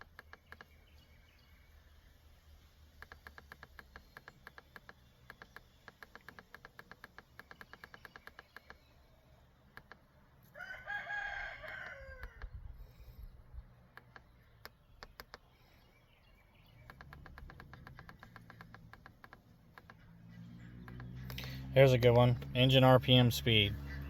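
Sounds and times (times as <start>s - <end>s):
rapid light clicks: 0.0s - 1.0s, 2.6s - 10.6s, 11.6s - 15.9s, 16.6s - 21.7s
rooster crowing: 10.5s - 12.6s.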